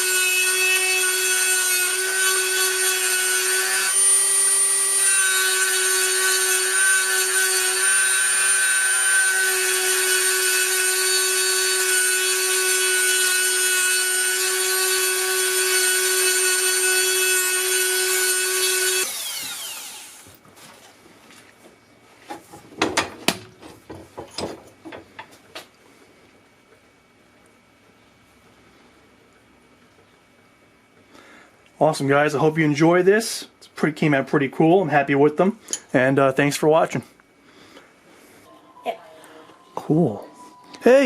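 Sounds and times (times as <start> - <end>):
electric grinder running: 0.0 - 20.4.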